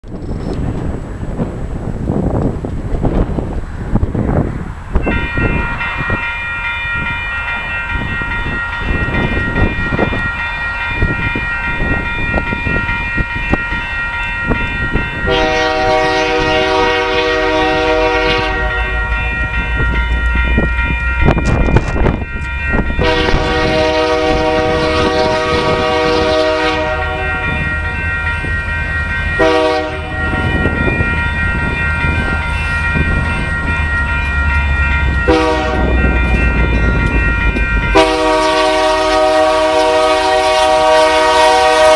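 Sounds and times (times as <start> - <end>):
train rumble and wheel clatter: 0.0 - 41.9
high steady ringing tone: 5.0 - 39.5
locomotive air horn blasts: 15.2 - 19.6, 23.0 - 28.0, 29.4 - 30.7, 35.2 - 36.6, 37.9 - 41.9.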